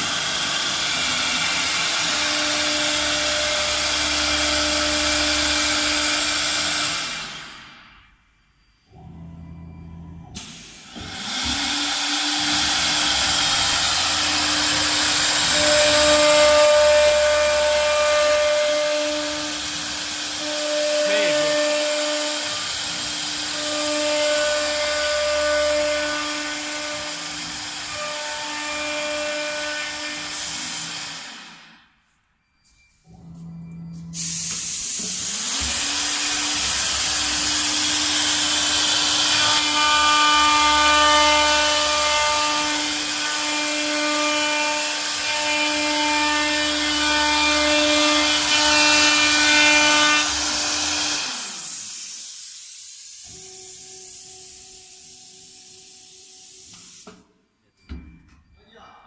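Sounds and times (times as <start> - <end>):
wood router spindle cutting: 0.0 - 7.5, 10.4 - 31.6, 35.0 - 51.9.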